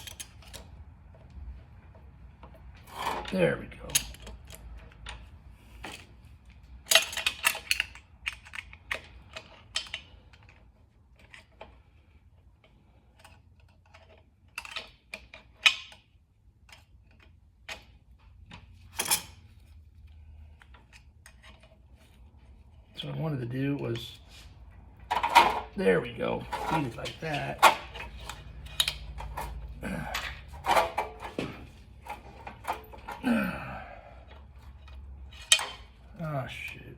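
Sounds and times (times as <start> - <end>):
metal chain clicking and rattling: 0.0 - 0.8.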